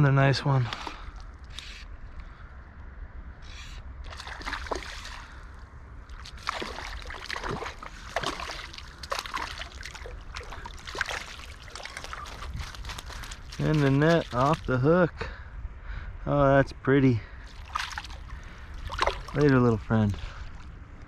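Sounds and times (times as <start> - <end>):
fish splashing in water: 4.1 - 14.8, 17.5 - 20.7.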